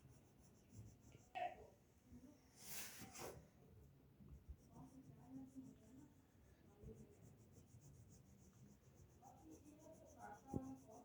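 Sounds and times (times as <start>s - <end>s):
fast scribbling on paper: 4.5s - 11.0s.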